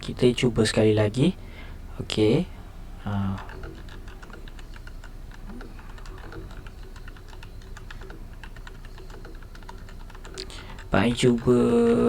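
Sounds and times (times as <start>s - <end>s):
mechanical keyboard typing: 3.0s - 12.0s.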